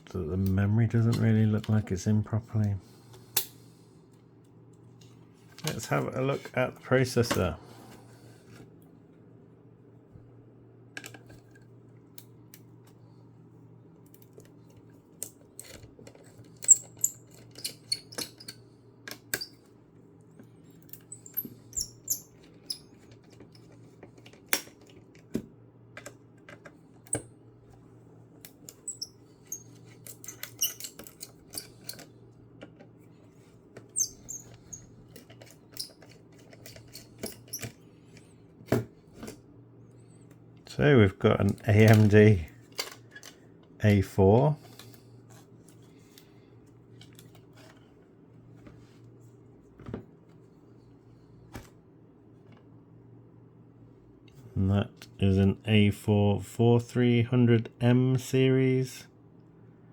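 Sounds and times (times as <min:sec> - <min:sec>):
low electrical hum: 0:00.0 - 0:59.9
tools clicking and scraping on metal: 0:28.5 - 0:32.8, 0:34.0 - 0:37.8.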